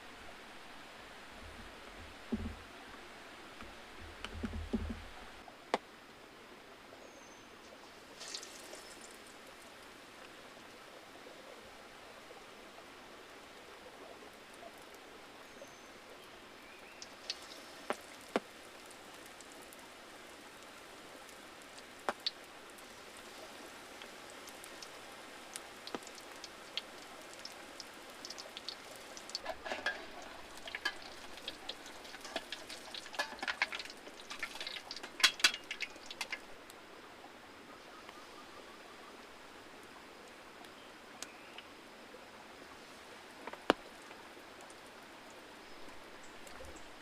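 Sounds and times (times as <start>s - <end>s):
raindrops pattering: 0.0s - 5.8s, 7.6s - 10.7s, 16.2s - 37.1s, 42.6s - 47.0s
steady hiss of rain: 0.0s - 47.0s.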